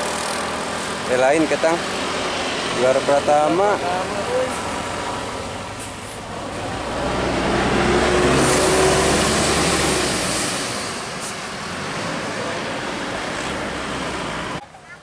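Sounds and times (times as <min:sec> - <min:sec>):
heavy vehicle engine passing: 0:00.0 - 0:14.6.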